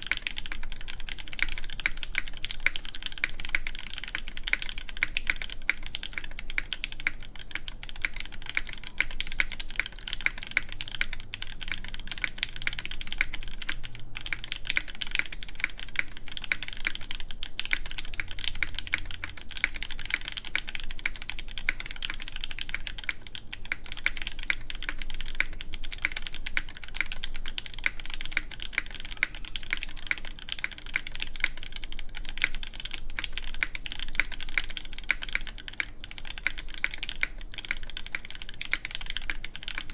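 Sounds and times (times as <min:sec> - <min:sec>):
fast typing on mechanical keyboard: 0:00.0 - 0:39.9.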